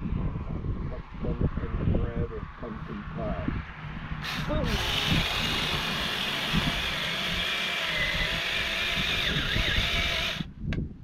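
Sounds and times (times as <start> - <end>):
small chainsaw cutting: 4.2 - 10.5.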